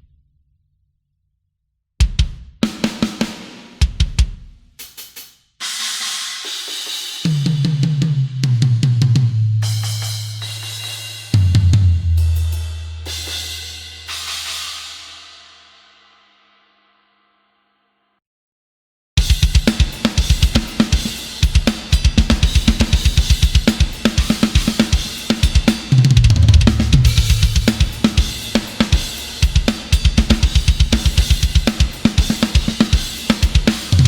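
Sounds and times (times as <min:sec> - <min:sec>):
crashing cymbals: 0:09.6 - 0:16.6, 0:26.6 - 0:34.0.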